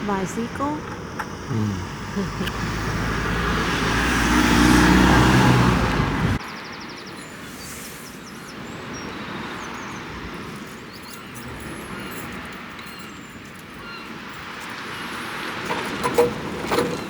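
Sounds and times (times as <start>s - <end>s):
quiet street ambience: 0.0s - 17.0s
vehicle driving past: 0.5s - 6.4s.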